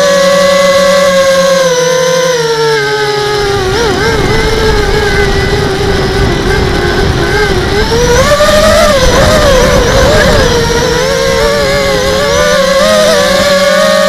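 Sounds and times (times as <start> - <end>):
drone motors whining: 0.0 - 14.0
low rushing noise: 3.4 - 13.7.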